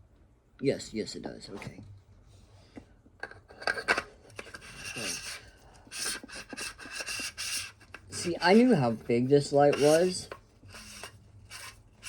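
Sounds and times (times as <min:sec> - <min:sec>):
metal parts scraping and rubbing: 0:03.6 - 0:12.0.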